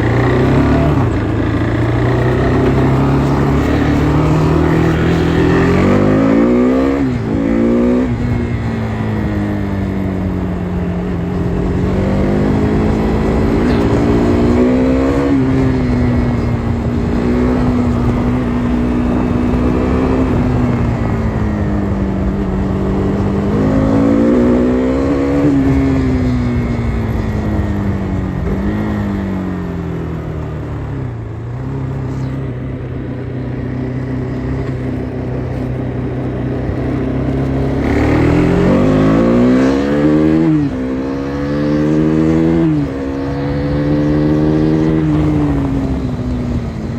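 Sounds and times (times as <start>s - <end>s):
motorcycle engine revving: 0.0s - 46.9s.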